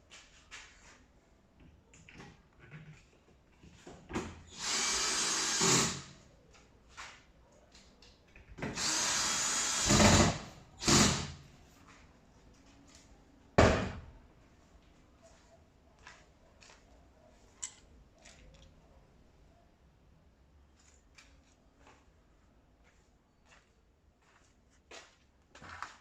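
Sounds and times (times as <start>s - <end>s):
power drill driving screws: 4.5s - 6.2s, 8.6s - 11.4s.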